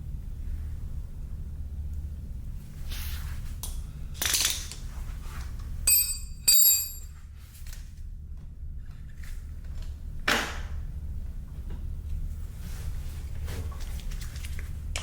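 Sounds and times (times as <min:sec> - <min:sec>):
steady low hum: 0:00.0 - 0:15.0
bright ringing metal clinks: 0:05.9 - 0:07.1
metal tools clinking and scraping: 0:05.9 - 0:07.1.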